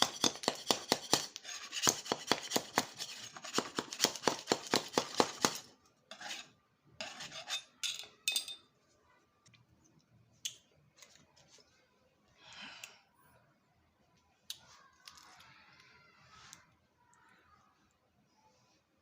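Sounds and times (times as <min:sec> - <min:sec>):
scraping strokes on small parts: 0:00.0 - 0:07.8.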